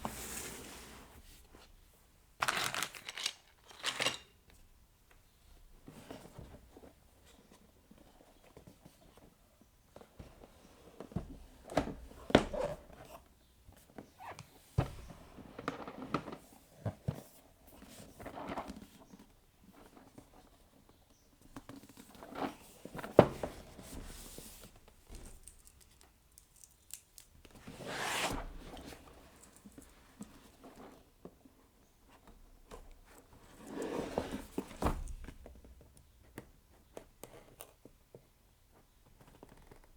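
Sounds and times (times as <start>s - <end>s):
plastic and cardboard rustling: 0.0s - 1.7s, 2.4s - 4.3s
packaging clicks and taps: 2.4s - 4.2s.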